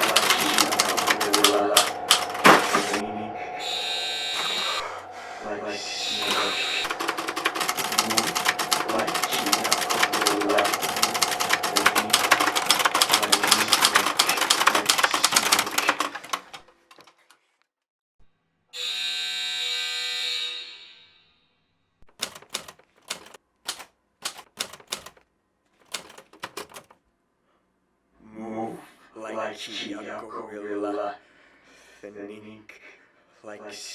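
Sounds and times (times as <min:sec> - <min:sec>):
typewriter keys clattering: 0:00.0 - 0:03.0, 0:06.1 - 0:17.4, 0:22.1 - 0:25.2, 0:25.8 - 0:27.0
held pitched tone: 0:00.0 - 0:16.0.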